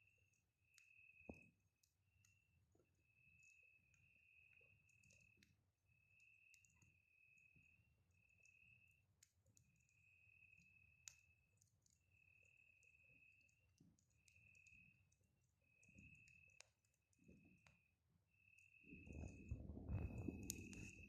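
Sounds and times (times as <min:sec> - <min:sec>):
campfire crackling and popping: 0:08.2 - 0:17.9, 0:18.6 - 0:21.0.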